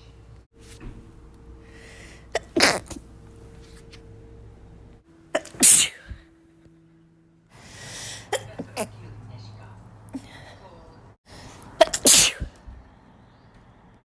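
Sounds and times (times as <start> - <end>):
woman sneezing: 2.4 - 3.0, 5.4 - 6.2, 11.8 - 12.6.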